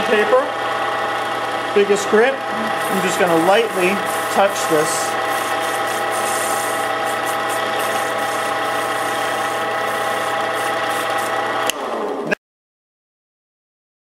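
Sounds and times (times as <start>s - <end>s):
wood lathe motor whine: 0.0s - 12.2s
sandpaper hissing on spinning wood: 2.7s - 11.4s.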